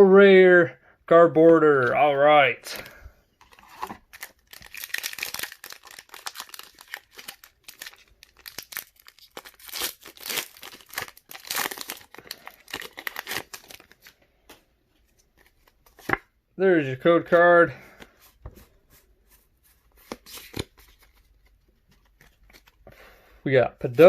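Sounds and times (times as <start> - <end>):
foil wrapper crinkling and tearing: 3.5 - 14.2.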